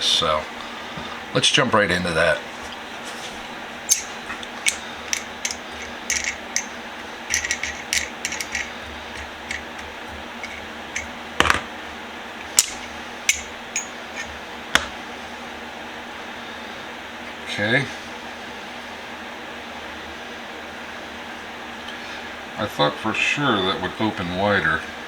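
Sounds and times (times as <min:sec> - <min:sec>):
small metallic clicks and clinks: 0:03.9 - 0:11.1.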